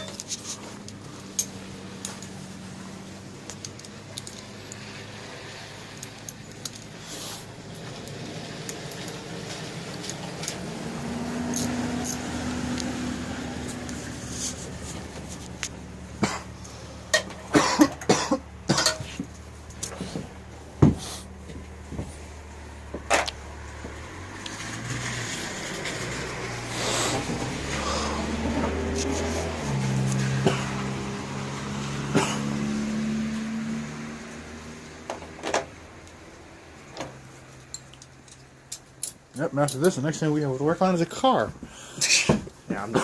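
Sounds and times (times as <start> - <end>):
metal tools clanking: 0.0 - 2.4, 11.4 - 12.3, 17.1 - 20.2, 37.6 - 40.4.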